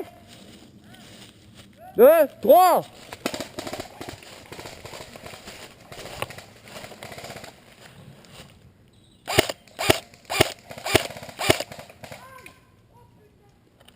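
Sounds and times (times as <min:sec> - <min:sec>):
airsoft rifle shots: 0:09.3 - 0:12.4.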